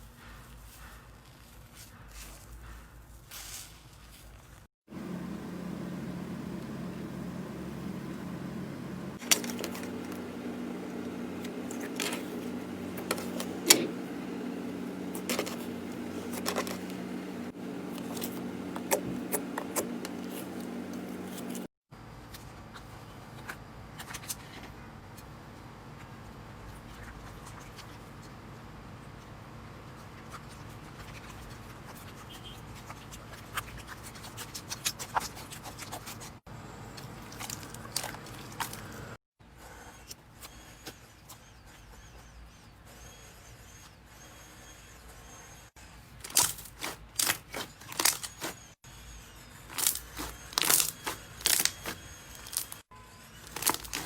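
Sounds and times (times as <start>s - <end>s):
low steady hum: 4.9s - 21.7s.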